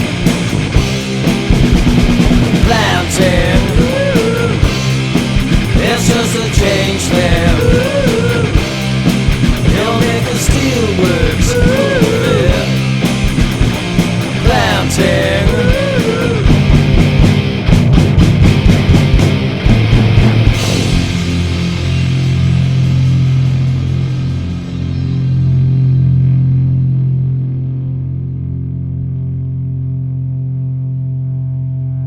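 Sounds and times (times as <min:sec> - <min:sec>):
drum passage: 0:00.0 - 0:24.7
rock band music: 0:00.0 - 0:30.7.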